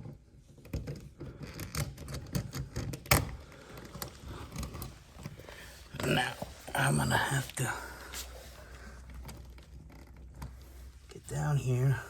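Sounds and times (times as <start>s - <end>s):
small metallic clicks and rattles: 0.0s - 5.5s.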